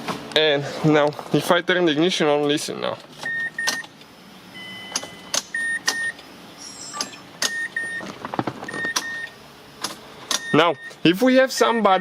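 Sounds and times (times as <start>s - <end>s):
dashboard chime beeping: 10.4s - 12.0s.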